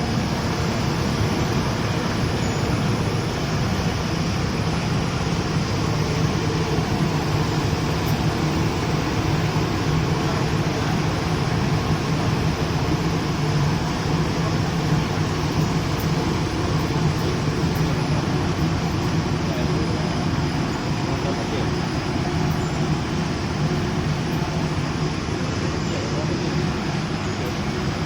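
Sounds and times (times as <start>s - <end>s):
welding machine humming: 0.0s - 19.4s
noisy hiss: 0.0s - 28.0s.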